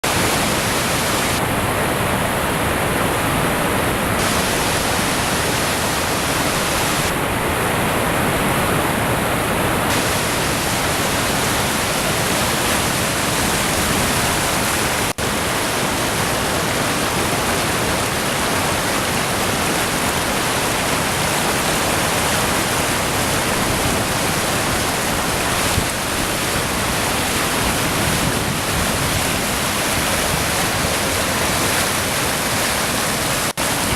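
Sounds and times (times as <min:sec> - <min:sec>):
waterfall roaring: 0:00.0 - 0:33.9.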